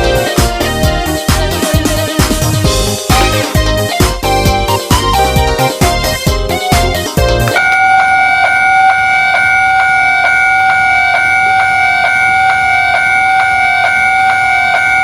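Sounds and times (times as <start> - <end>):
level crossing warning bell: 7.5 - 15.0.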